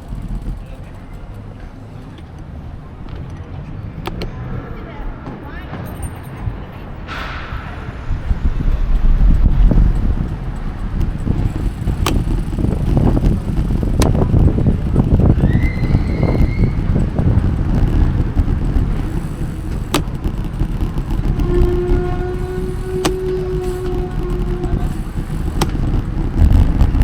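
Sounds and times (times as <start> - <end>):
road traffic rumble: 0.0 - 27.0
sharp clicks: 9.3 - 27.0
short high squeal: 15.4 - 16.9.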